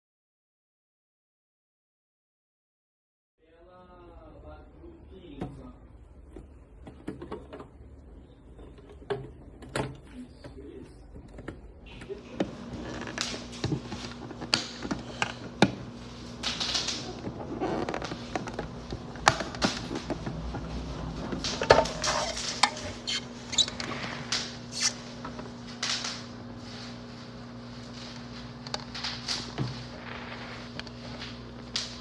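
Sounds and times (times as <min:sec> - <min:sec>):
plastic containers handled: 0:05.4 - 0:26.1
low hum: 0:07.8 - 0:32.0.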